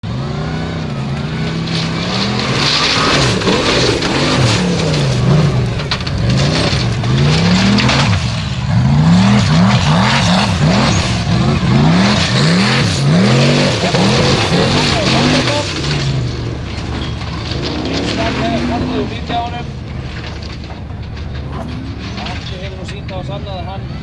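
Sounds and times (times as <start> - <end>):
engine revving hard: 0.0 - 16.4.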